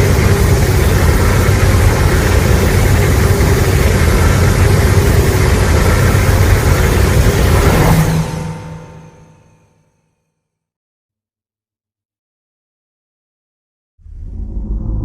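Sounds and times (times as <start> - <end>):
low rumbling roar: 0.0 - 9.4, 14.0 - 15.0.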